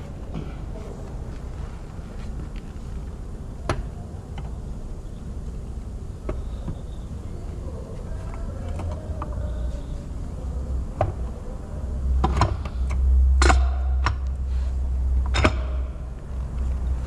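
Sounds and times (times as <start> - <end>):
steady low hum: 0.0 - 17.0
sharp clicks and knocks: 12.2 - 14.4, 15.2 - 16.8.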